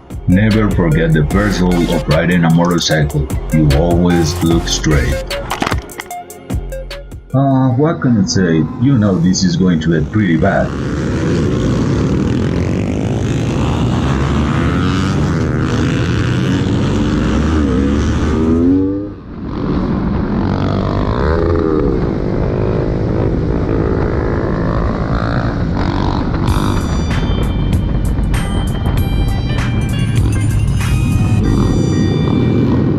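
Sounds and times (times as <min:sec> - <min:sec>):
motorcycle engine accelerating: 0:00.0 - 0:06.0, 0:08.6 - 0:32.9
music with steady beat: 0:00.0 - 0:07.4, 0:26.5 - 0:32.1.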